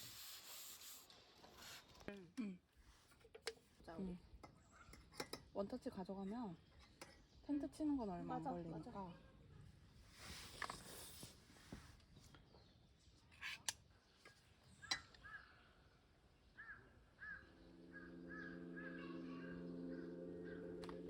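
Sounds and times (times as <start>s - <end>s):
soft background music: 17.2s - 21.0s.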